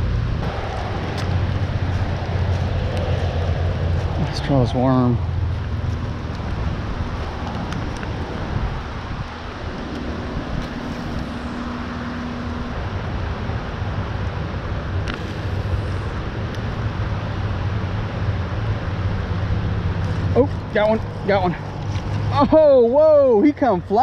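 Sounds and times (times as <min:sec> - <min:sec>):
rushing outdoor background noise: 0:00.0 - 0:24.0.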